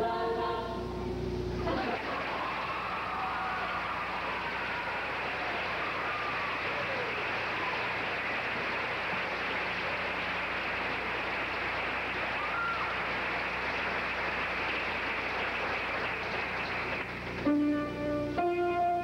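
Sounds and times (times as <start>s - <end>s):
low electrical hum: 0.0s - 19.0s
audience applauding: 1.7s - 17.5s.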